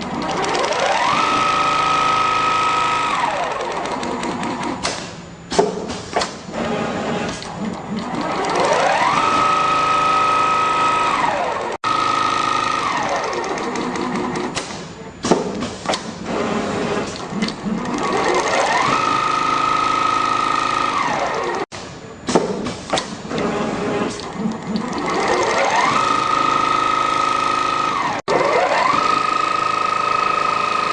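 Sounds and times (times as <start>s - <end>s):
sewing machine clicking and clattering: 0.0s - 1.5s, 7.4s - 9.2s, 17.1s - 19.3s, 24.1s - 30.9s
sewing machine motor whine: 0.1s - 4.8s, 8.0s - 14.5s, 17.8s - 21.7s, 23.3s - 30.9s.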